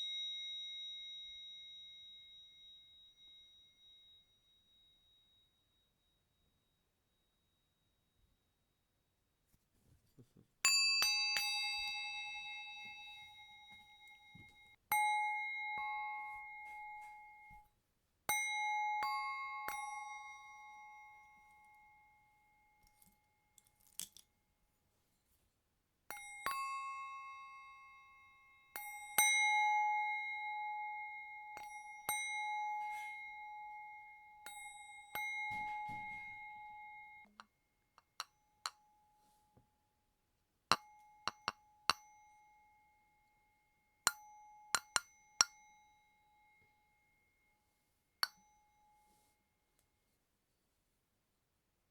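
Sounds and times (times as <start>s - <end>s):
metal bowl bell ringing: 0.0s - 7.6s, 10.7s - 17.6s, 18.3s - 23.1s, 26.1s - 37.5s, 40.7s - 47.6s, 48.2s - 49.3s
light clinks and taps: 22.8s - 24.4s, 34.5s - 39.7s, 40.7s - 42.1s, 44.1s - 45.6s, 48.2s - 49.3s.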